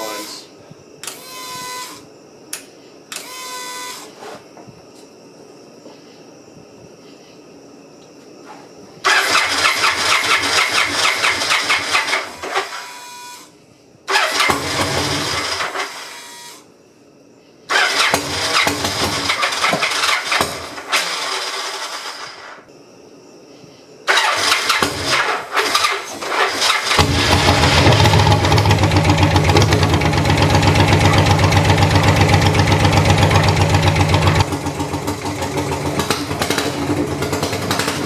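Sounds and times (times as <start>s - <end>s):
motorcycle engine cranking: 9.1s - 12.8s, 14.1s - 15.9s, 17.7s - 22.4s, 24.1s - 38.0s.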